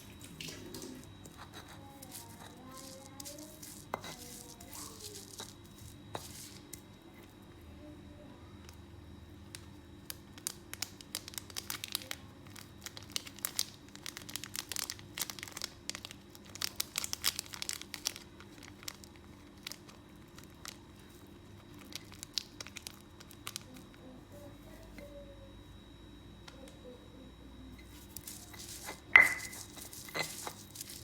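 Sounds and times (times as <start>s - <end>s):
dry crinkling and crackling: 0.0s - 6.8s, 9.5s - 24.1s, 27.8s - 31.0s.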